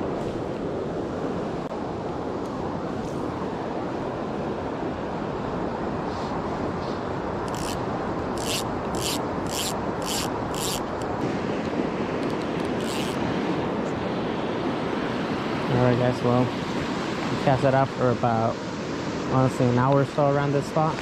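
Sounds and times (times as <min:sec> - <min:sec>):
wind: 0:00.0 - 0:21.0.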